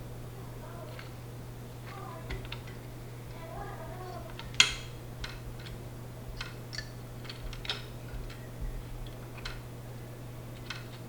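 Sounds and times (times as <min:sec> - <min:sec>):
steady low hum: 0:00.0 - 0:11.0
computer parts clicking: 0:03.9 - 0:05.8, 0:06.4 - 0:09.7, 0:10.5 - 0:11.0.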